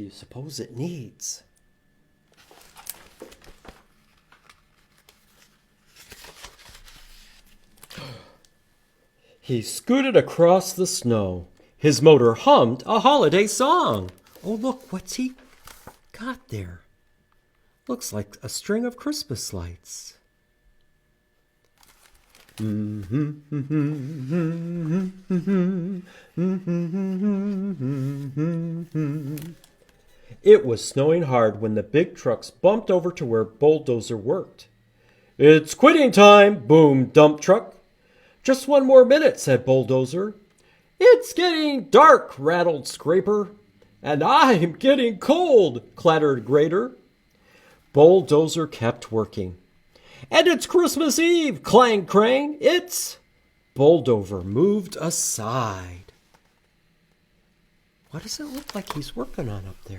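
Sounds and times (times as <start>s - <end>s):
book pages rustling: 2.3s - 8.0s, 13.8s - 16.1s, 21.7s - 22.7s, 29.1s - 30.0s, 58.2s - 59.9s
man humming a tune: 22.6s - 29.7s.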